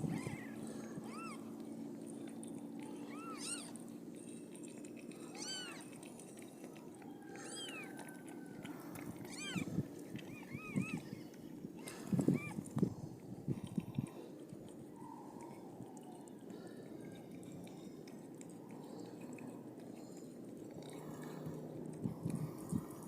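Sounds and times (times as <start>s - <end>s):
kittens mewing: 0.0s - 1.6s, 2.9s - 3.8s, 5.2s - 6.0s, 7.4s - 8.2s, 9.0s - 12.7s
faint steady hum: 0.0s - 23.0s.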